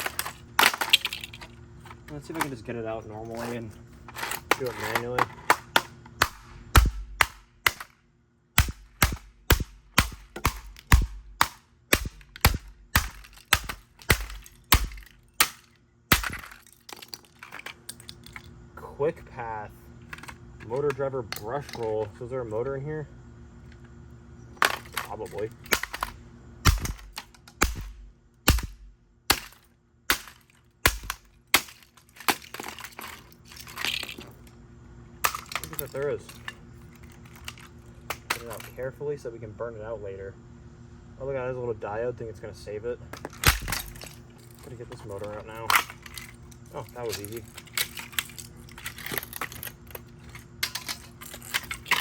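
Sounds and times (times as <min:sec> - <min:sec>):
blows smashing plastic housing: 0:08.6 - 0:17.7, 0:24.6 - 0:34.3, 0:43.2 - 0:44.6.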